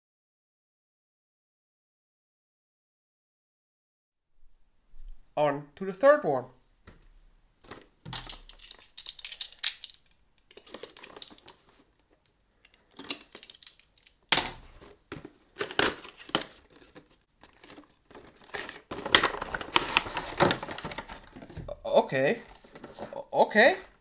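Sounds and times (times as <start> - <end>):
cardboard packaging rustling: 6.8 - 23.2.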